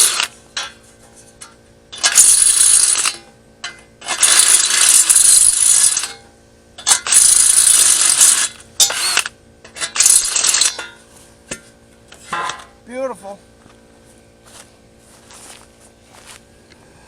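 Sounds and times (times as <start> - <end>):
electric welder crackling: 0.0 - 0.4, 2.0 - 3.2, 4.0 - 6.2, 6.8 - 10.8
faint steady hum: 0.0 - 17.0.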